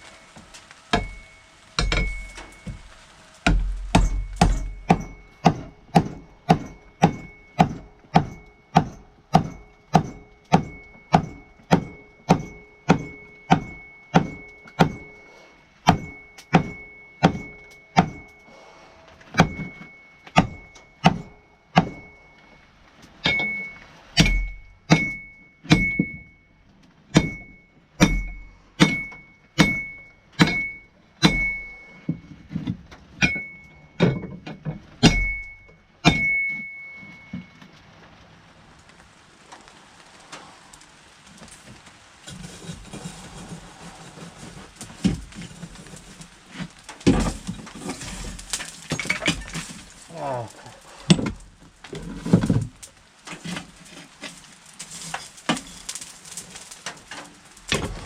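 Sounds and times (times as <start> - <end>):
hammer striking steel on anvil: 0.9 - 2.8, 3.5 - 15.2, 15.8 - 18.4, 19.3 - 22.2, 23.2 - 26.3, 27.1 - 31.9, 33.2 - 34.2, 35.0 - 36.9.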